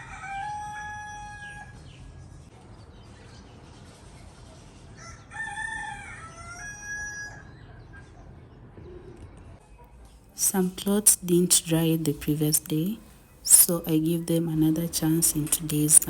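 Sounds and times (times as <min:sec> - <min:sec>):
rooster crowing: 0:00.0 - 0:01.8, 0:05.0 - 0:07.6.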